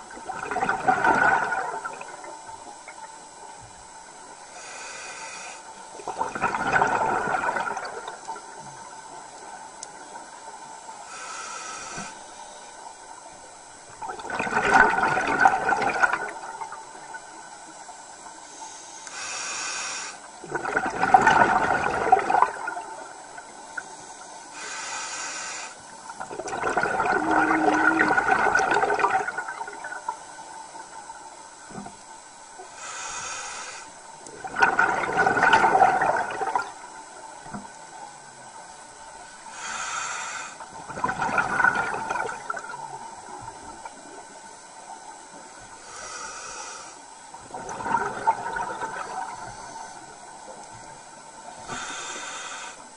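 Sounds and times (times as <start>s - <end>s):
exhaled bubbles gushing: 0.0s - 3.0s, 6.0s - 8.4s, 13.9s - 17.2s, 20.4s - 23.5s, 26.1s - 30.1s, 34.2s - 36.8s, 40.7s - 44.2s, 47.4s - 49.5s
scuba regulator inhalation hiss: 4.4s - 5.8s, 11.0s - 12.7s, 18.4s - 20.4s, 23.7s - 25.9s, 32.6s - 34.0s, 39.5s - 40.7s, 45.7s - 47.2s, 49.0s - 50.4s, 51.4s - 52.9s.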